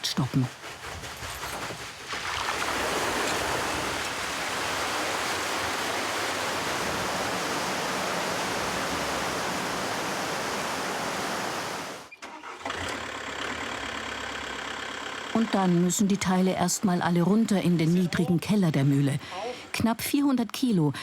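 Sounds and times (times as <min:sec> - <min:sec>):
water rushing at water wheel: 0:00.0 - 0:12.1
engine hum: 0:05.7 - 0:18.0.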